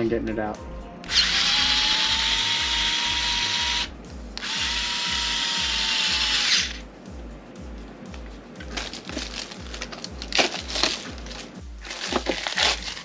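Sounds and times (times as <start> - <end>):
electric screwdriver motor whirring: 1.1 - 6.8.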